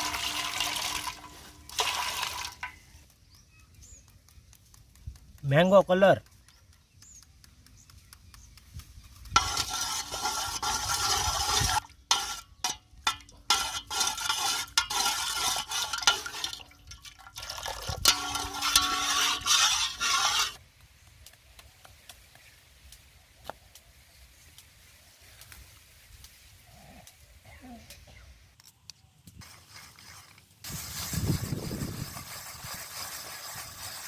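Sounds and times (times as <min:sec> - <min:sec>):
syrup being poured and stirred: 0:00.0 - 0:02.8, 0:09.4 - 0:20.6.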